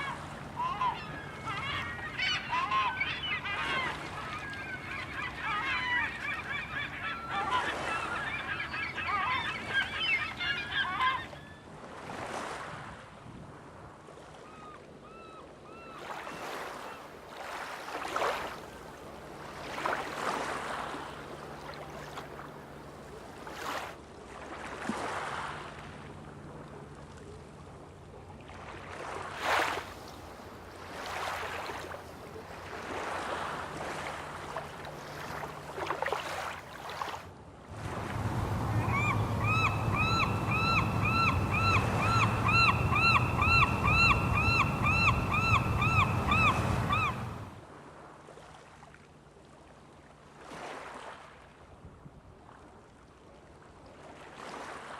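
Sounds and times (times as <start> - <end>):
flock of birds calling: 0.0 - 11.4, 38.2 - 47.5
waves washing in: 0.0 - 14.7, 16.0 - 51.7, 52.4 - 54.9.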